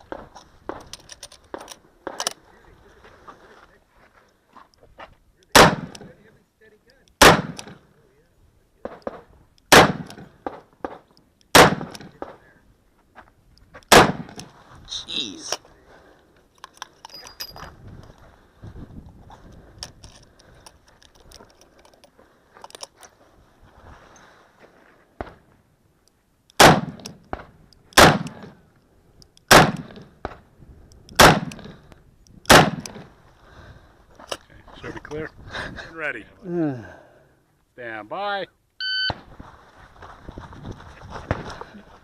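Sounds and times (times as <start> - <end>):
handgun shots: 5.5 - 6.1, 7.2 - 7.8, 9.0 - 12.3, 13.9 - 14.4, 26.6 - 27.4, 28.0 - 28.5, 29.5 - 30.0, 31.2 - 31.8, 32.5 - 33.0.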